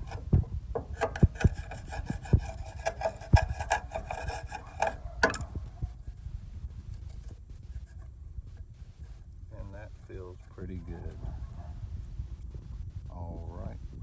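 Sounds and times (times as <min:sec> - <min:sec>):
screwdriver scraping metal: 0:00.0 - 0:05.5.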